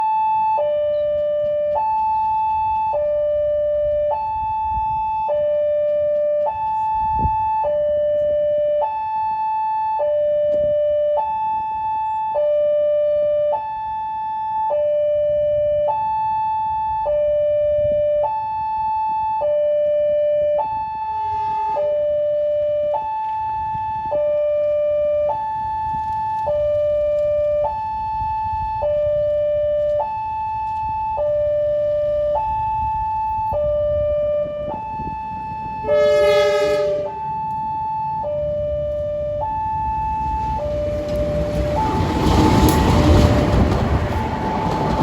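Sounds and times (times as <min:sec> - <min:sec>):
two-tone crossing alarm: 0:00.0 - 0:45.0.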